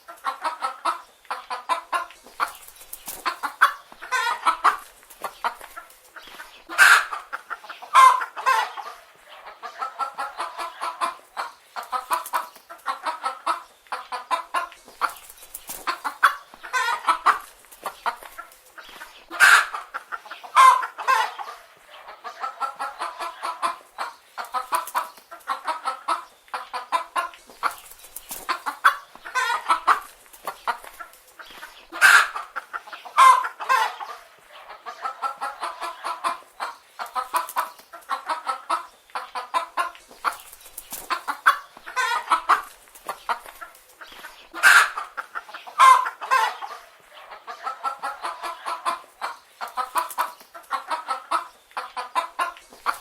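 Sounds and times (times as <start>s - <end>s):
hens clucking: 0.0s - 53.0s.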